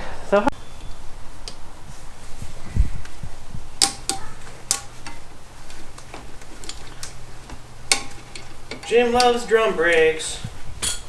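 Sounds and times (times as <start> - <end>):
metal tools clinking: 5.9 - 11.0
ringing metal clanks: 7.8 - 9.5.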